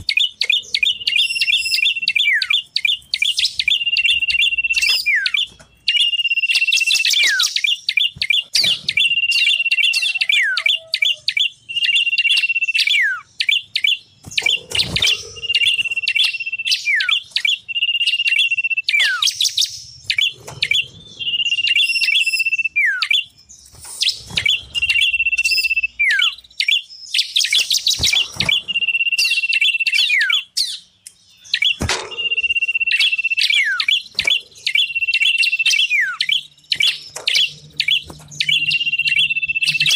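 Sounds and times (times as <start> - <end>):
fast sharp bird chattering: 0.0 - 30.8.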